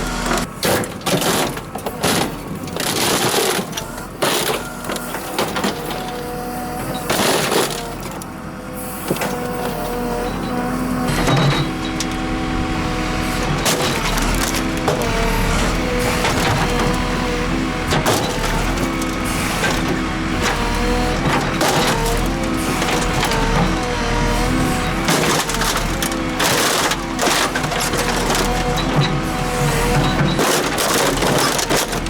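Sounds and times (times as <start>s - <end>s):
washing machines being crushed: 11.1s - 32.0s.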